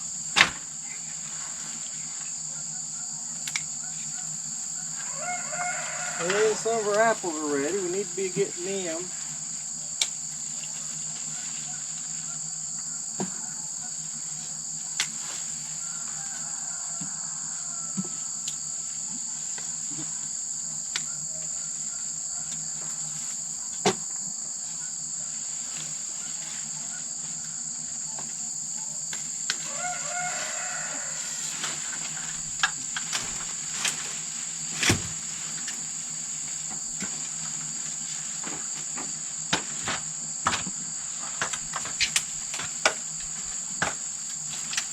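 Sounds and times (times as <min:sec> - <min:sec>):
crickets chirping: 0:00.0 - 0:44.9.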